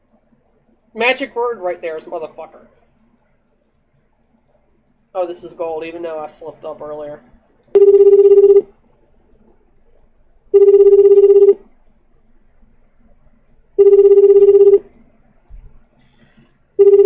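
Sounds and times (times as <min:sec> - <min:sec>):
telephone ringing: 0:07.8 - 0:08.7, 0:10.5 - 0:11.6, 0:13.8 - 0:14.9, 0:16.8 - 0:17.0.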